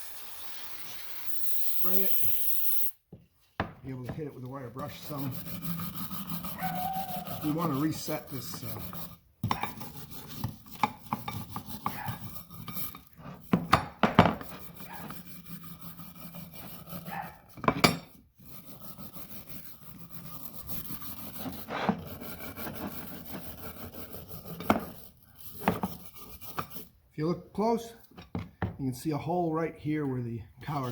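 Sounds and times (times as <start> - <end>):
wire brush scrubbing metal: 1.1 - 2.8, 4.6 - 13.6, 14.4 - 17.4
louder scrapes and knocks: 3.9 - 15.3, 20.4 - 26.8.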